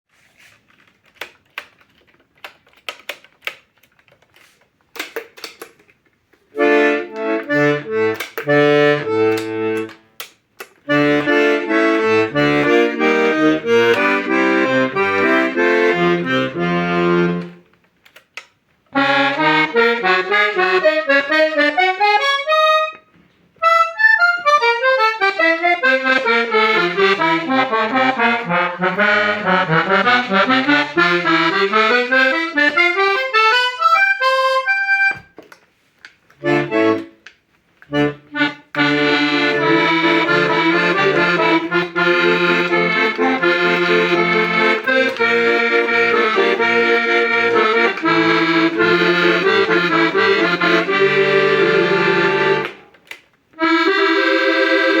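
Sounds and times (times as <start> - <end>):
accordion handling clicks: 1.0 - 6.0, 6.6 - 23.0, 23.6 - 55.0
accordion chords and bass notes: 6.5 - 17.8, 18.9 - 35.4, 36.4 - 37.3, 37.9 - 52.9, 53.5 - 55.0
accordion treble note runs: 10.9 - 17.6, 23.6 - 35.2, 37.9 - 52.8, 53.6 - 55.0.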